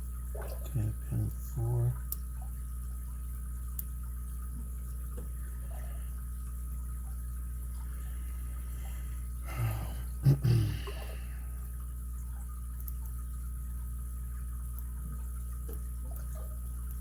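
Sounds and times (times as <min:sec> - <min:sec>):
steady low hum: 0:00.0 - 0:17.0
brief low vocal sound: 0:09.5 - 0:10.9.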